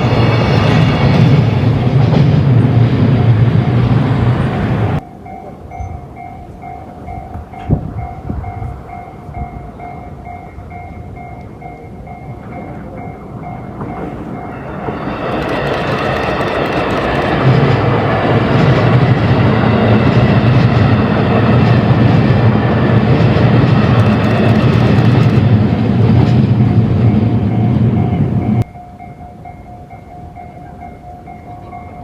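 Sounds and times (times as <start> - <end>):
freight train passing: 0.0 - 32.0.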